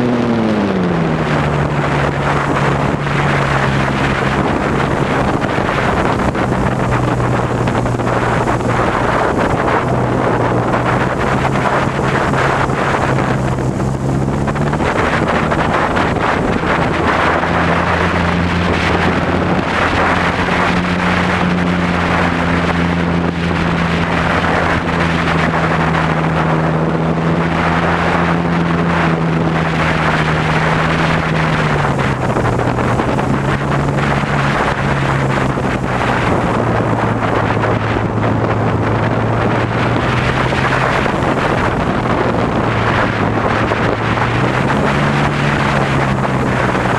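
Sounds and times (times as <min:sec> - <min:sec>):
airplane engine and propeller: 0:00.0 - 0:46.9
wind on microphone: 0:00.0 - 0:46.9.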